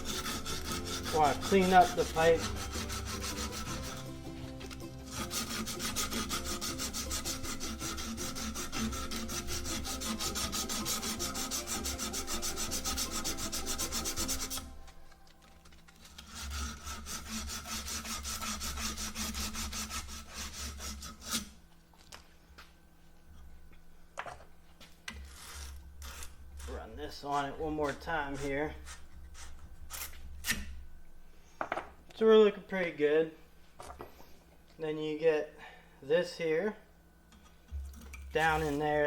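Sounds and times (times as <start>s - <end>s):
abrasive scrubbing copper pipe: 0.0s - 14.8s, 16.1s - 21.5s, 25.2s - 29.6s, 37.8s - 39.0s.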